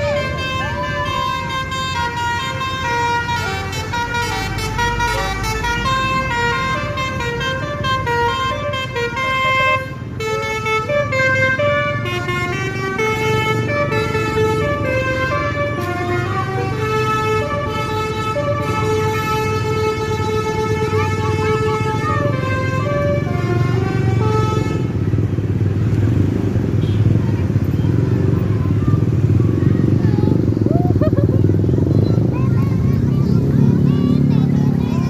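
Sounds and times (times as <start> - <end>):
musical bus horn melody: 0.0 - 25.1.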